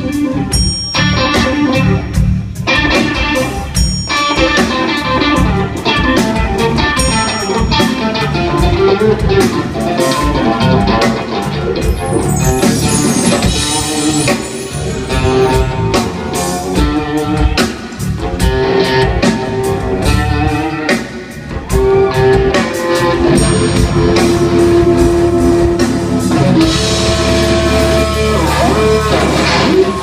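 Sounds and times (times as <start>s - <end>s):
drum kit: 0.0s - 30.0s
electric guitar bending notes: 0.0s - 30.0s.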